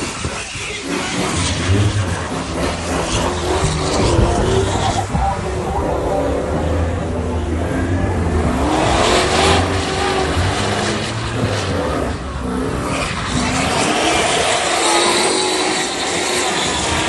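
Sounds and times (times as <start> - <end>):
rushing noise: 0.0 - 17.0
vehicle engine running: 0.6 - 12.8.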